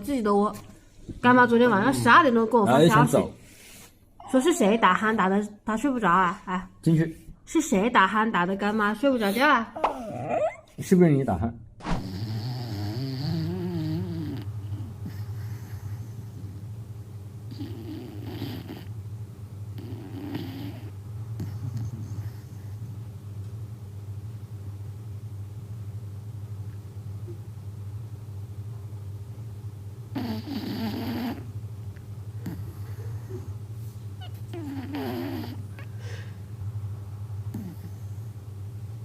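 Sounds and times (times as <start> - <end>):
steady low hum: 0.0 - 39.0
dog snoring: 12.0 - 16.8, 17.4 - 19.0, 19.7 - 23.0, 30.1 - 31.5, 32.3 - 33.6, 34.2 - 35.8, 37.4 - 38.4.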